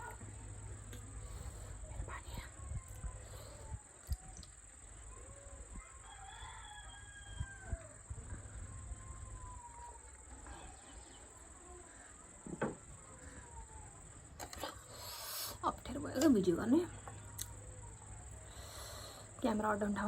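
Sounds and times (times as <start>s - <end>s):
rooster crowing: 5.4s - 10.6s.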